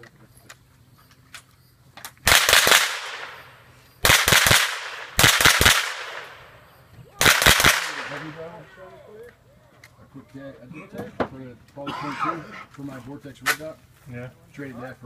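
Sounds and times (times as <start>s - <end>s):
rifle shots echoing: 2.2s - 8.6s.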